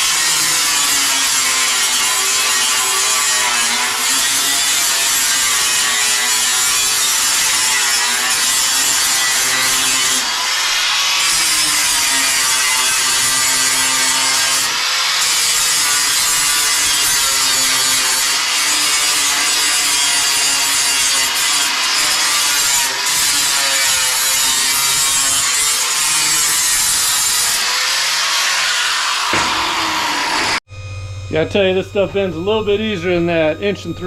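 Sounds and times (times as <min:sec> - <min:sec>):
angle grinder grinding metal: 0:00.0 - 0:34.0.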